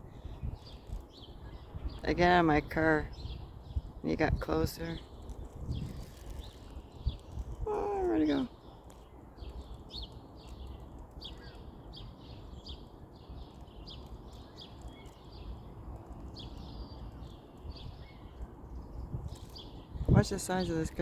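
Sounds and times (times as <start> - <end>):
birds chirping: 0.0 - 21.0.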